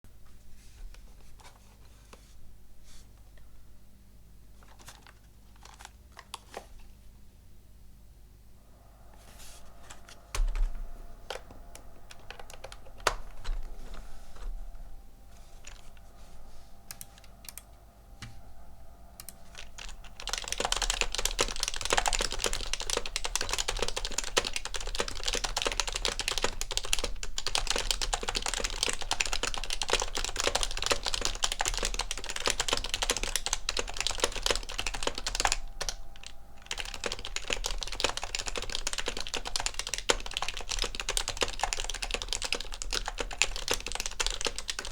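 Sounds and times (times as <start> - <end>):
typing on a keyboard: 4.6 - 6.6, 10.4 - 14.0, 19.2 - 44.9.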